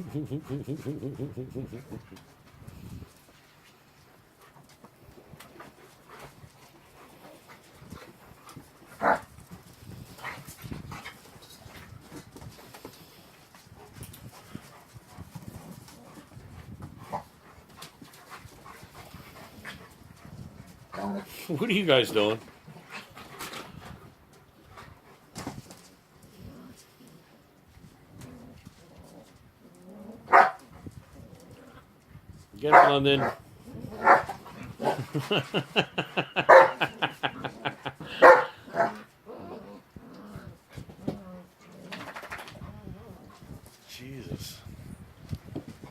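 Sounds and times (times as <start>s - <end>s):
dogs panting: 0.0s - 28.0s, 32.8s - 39.2s
dogs scuffling: 2.0s - 39.2s, 40.5s - 43.9s
dogs barking and yipping: 9.0s - 9.3s, 30.2s - 30.7s, 34.0s - 39.1s.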